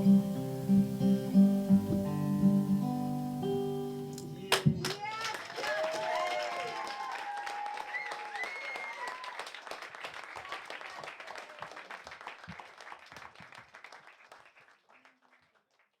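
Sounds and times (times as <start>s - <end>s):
audience whooping: 4.4s - 11.8s
audience applause: 4.4s - 15.9s.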